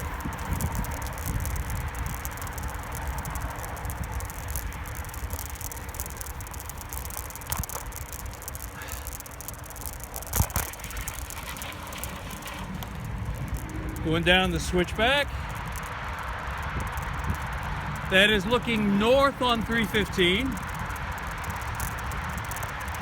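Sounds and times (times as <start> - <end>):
wind on microphone: 0.0 - 9.1, 9.7 - 19.0
freeway traffic rumble: 0.0 - 23.0.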